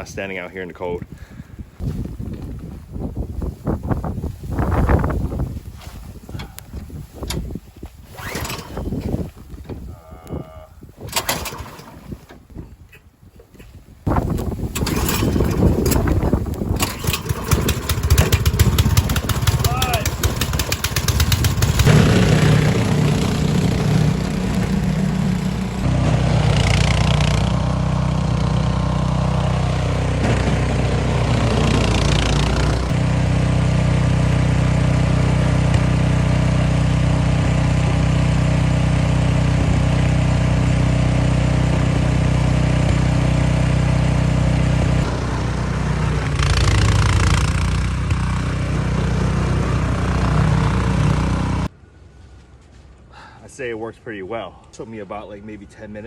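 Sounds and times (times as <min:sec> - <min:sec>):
snow blower engine running: 0:11.1 - 0:12.1, 0:14.7 - 0:51.7
brief rushing surges: 0:21.5 - 0:27.6.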